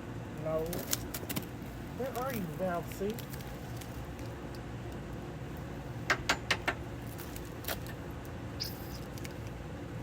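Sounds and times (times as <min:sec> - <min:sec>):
low steady hum: 0:00.0 - 0:10.0
brief squeak: 0:08.6 - 0:09.1.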